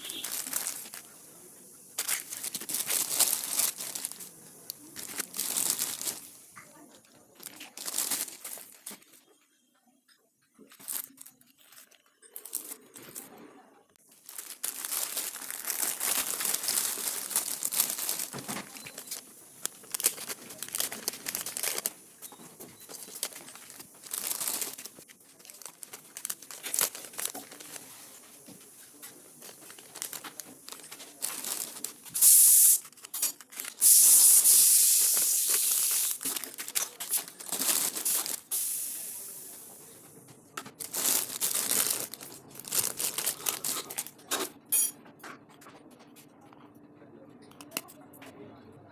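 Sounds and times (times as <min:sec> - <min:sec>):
packaging tearing: 0:00.0 - 0:01.1, 0:02.0 - 0:06.4, 0:07.4 - 0:09.0, 0:14.1 - 0:22.0, 0:22.8 - 0:39.4, 0:40.8 - 0:44.1
packaging crinkling and rustling: 0:00.0 - 0:09.3, 0:10.6 - 0:13.4, 0:14.0 - 0:44.5.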